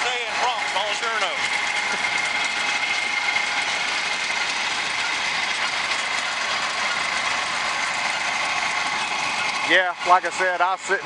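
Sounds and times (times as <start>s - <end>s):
combine harvester running: 0.0s - 11.0s
steady high whine: 0.0s - 11.0s.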